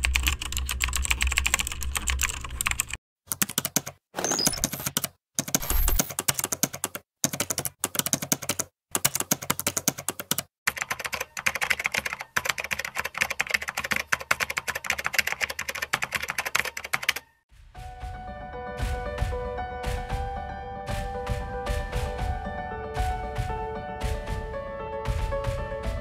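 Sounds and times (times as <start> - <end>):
typing on computer keyboard: 0.0 - 17.3
music: 17.5 - 26.0.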